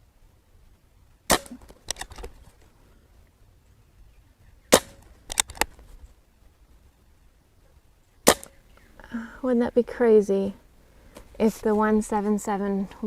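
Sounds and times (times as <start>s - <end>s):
air rifle shot: 1.3s - 2.0s, 4.7s - 5.1s, 8.2s - 8.6s.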